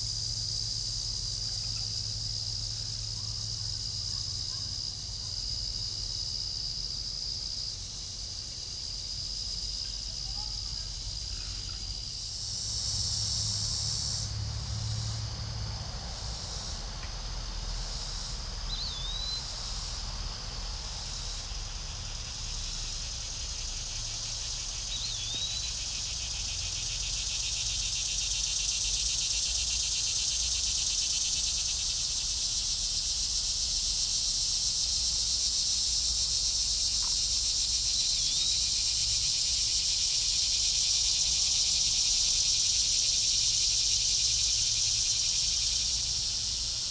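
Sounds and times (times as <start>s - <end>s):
crickets and insects trilling: 0.0s - 46.9s.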